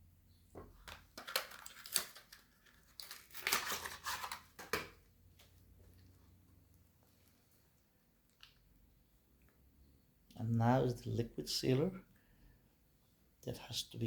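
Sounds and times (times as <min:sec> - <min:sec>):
crinkling handling noise: 0:00.5 - 0:08.6.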